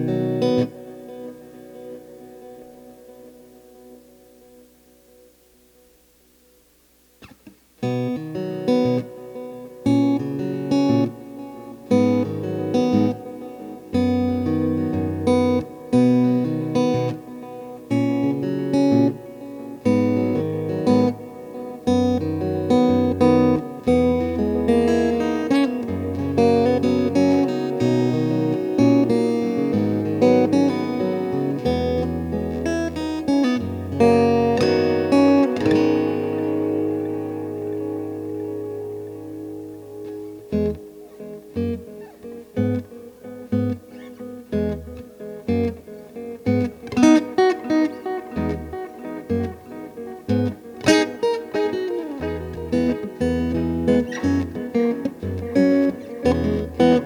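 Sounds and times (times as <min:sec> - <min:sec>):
acoustic guitar strumming chords: 0:00.0 - 0:57.0.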